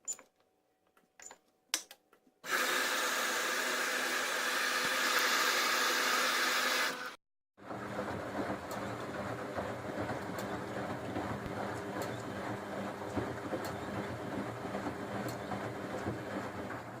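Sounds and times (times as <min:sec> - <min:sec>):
washing machine hum and rumble: 0:07.6 - 0:17.0.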